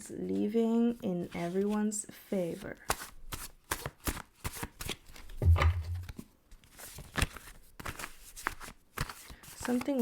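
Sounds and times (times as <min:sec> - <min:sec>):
playing cards shuffling: 0:02.9 - 0:10.0
dull low thump: 0:05.4 - 0:06.2.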